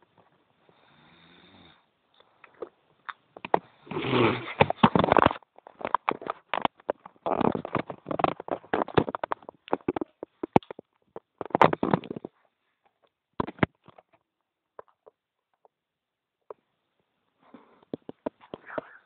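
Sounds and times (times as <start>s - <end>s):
rattling snores: 3.7s - 4.7s.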